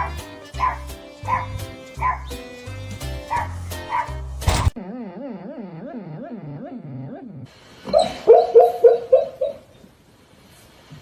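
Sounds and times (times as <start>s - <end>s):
dog barks: 0.0s - 2.3s, 3.3s - 4.2s, 7.9s - 9.6s
music with beat: 0.0s - 4.4s
dog whining: 4.8s - 9.7s.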